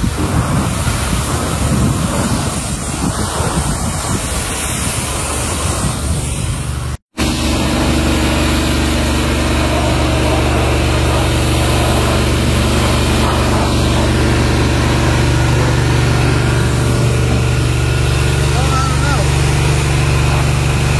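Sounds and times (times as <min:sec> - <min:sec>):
loud hiss: 0:00.0 - 0:20.9
engine-like drone: 0:06.4 - 0:20.9.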